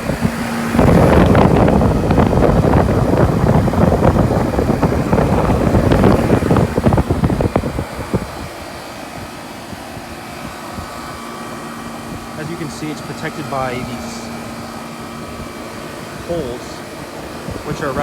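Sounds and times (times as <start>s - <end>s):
air conditioner unit humming: 0.0s - 18.0s
wind buffeting microphone: 0.0s - 18.0s.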